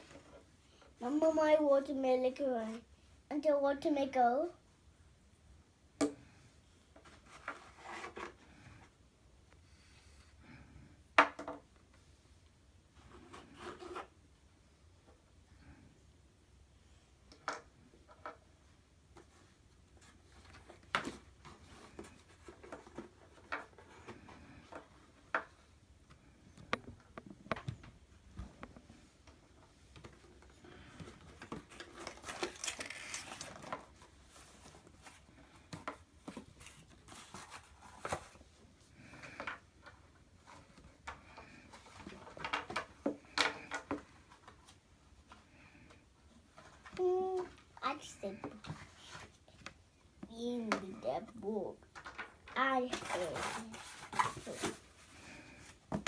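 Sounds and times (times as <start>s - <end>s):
packaging rustling: 31.1s - 35.3s, 52.9s - 55.8s.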